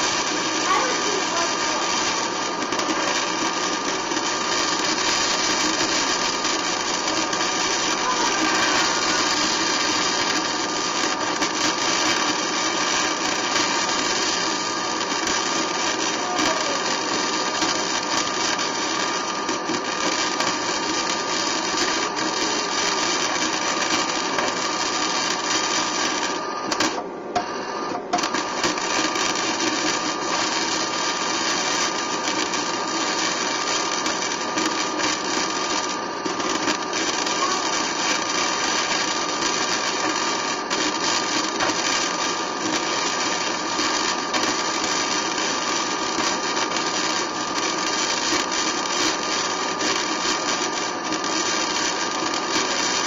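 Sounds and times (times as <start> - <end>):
power tool whirring: 0.7 - 12.2.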